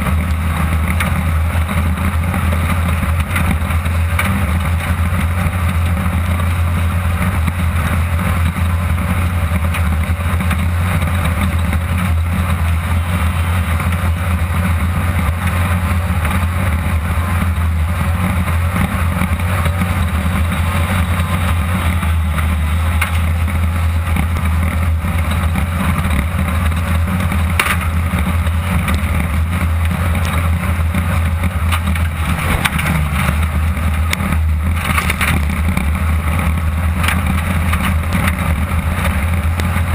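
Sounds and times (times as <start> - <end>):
car engine running at speed: 0.0 - 39.9
rough rushing noise: 11.3 - 39.9
chassis knocks: 31.7 - 33.4.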